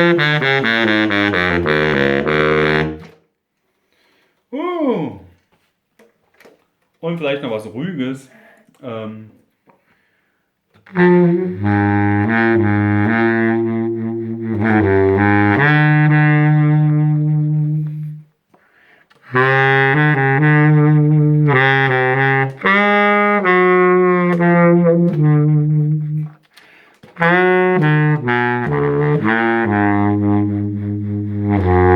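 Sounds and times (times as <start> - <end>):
baritone saxophone melody: 0.0 - 3.2, 10.8 - 18.4, 19.1 - 31.9.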